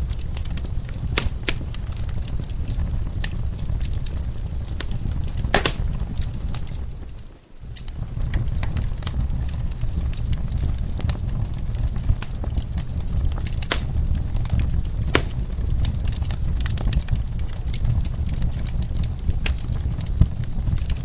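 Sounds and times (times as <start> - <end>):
low rumble of flame: 0.0 - 21.0
wood fire crackling: 0.0 - 21.0
sharp pops from fire: 0.4 - 7.9, 13.4 - 17.0.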